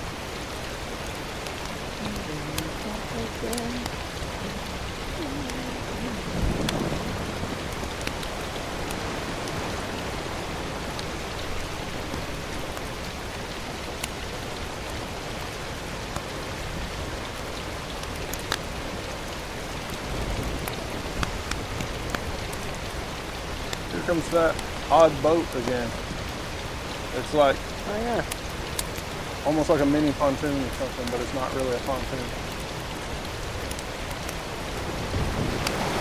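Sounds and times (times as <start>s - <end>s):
steady outdoor hiss: 0.0s - 36.0s
sharp ticks: 23.6s - 34.5s.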